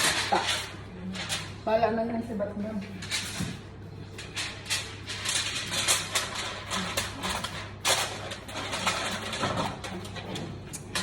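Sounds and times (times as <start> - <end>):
aluminium foil crinkling: 0.0 - 1.6, 4.1 - 11.0.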